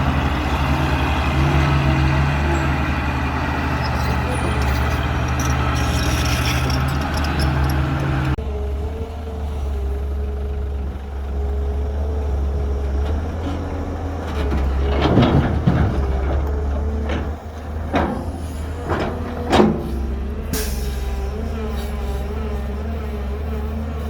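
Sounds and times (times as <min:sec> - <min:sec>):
diesel machinery engine drone: 0:00.0 - 0:24.0
clattering: 0:03.8 - 0:08.4, 0:14.2 - 0:20.9.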